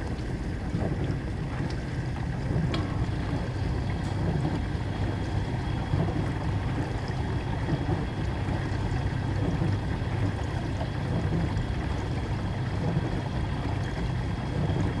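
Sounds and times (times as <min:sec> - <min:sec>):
dishwasher pump hum: 0:00.0 - 0:15.0.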